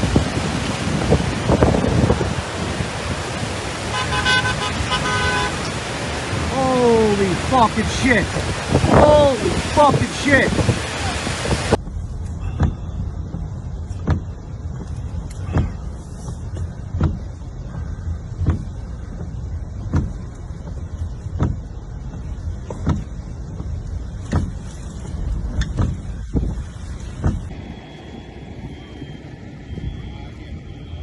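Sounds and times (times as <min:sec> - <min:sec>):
car engine and road rumble: 0:00.0 - 0:31.0
windshield wipers knocking: 0:11.4 - 0:27.8.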